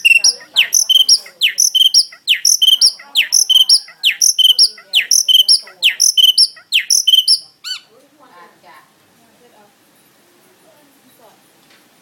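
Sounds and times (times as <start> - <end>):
songbird singing: 0.0 - 8.0.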